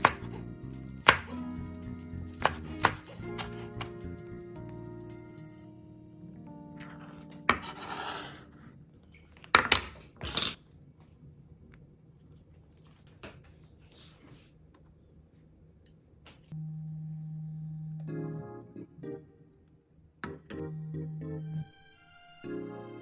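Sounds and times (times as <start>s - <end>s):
soft background music: 0.0s - 9.0s, 16.5s - 23.0s.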